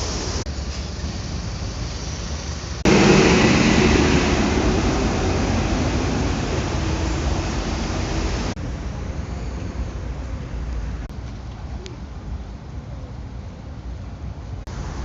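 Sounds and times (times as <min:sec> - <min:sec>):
rain hissing: 0:00.0 - 0:08.6, 0:14.7 - 0:15.0
street traffic: 0:00.0 - 0:15.0.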